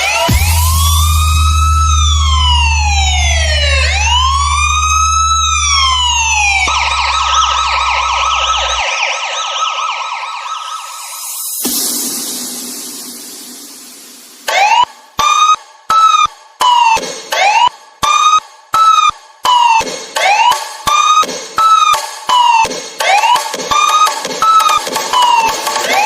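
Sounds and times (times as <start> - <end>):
deep bass drone: 0.0 - 8.9
electronic police siren wailing: 0.0 - 11.6, 14.5 - 26.0.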